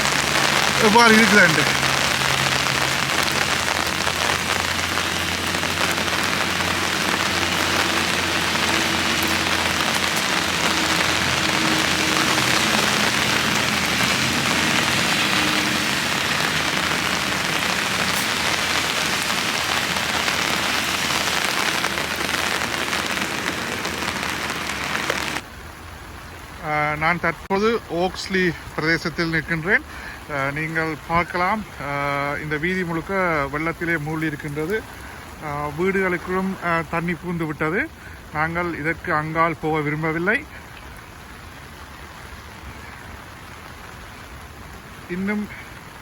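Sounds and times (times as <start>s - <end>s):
heavy rain falling: 0.0s - 46.0s.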